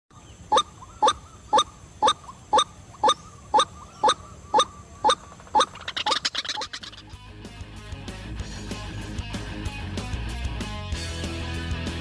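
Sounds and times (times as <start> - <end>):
waterhen calling: 0.1 - 7.1.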